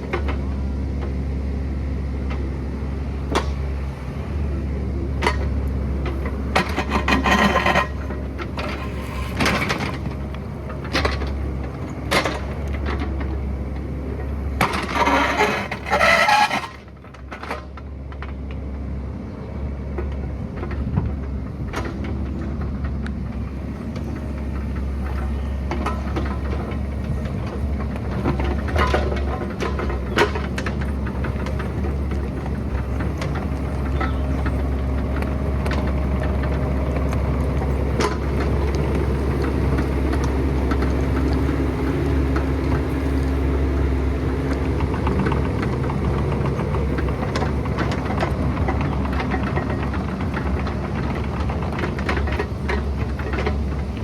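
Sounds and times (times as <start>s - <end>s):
excavator running: 0.0s - 54.0s
scraping bursts: 6.2s - 10.2s, 14.6s - 16.9s.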